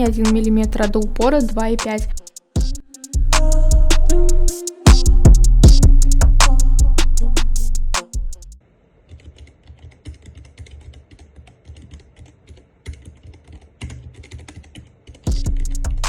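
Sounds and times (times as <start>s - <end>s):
music: 0.0s - 8.6s, 15.3s - 16.0s.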